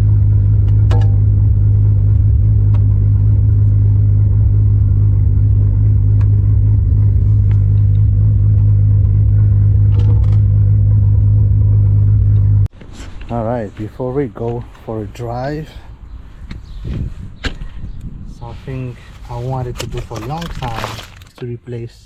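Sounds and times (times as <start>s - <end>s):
car engine idling: 0.0s - 12.7s.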